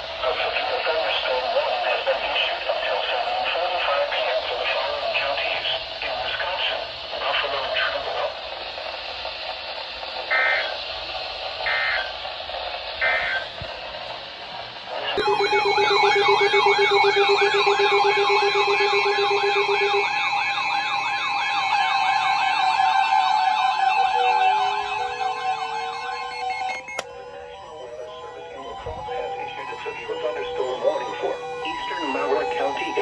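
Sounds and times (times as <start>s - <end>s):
digital data bursts: 15.2s - 26.9s
wailing electronic siren: 15.2s - 33.0s.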